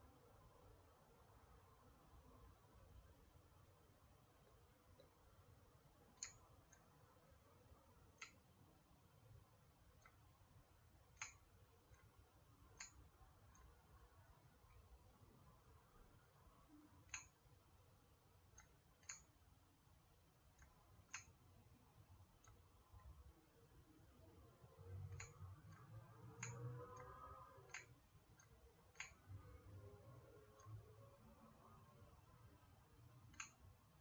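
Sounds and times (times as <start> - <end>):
faint sharp clicks: 6.0 - 7.0, 8.1 - 8.5, 11.1 - 13.8, 16.7 - 17.5, 18.5 - 19.4, 20.5 - 21.4, 24.9 - 31.0, 31.6 - 34.0.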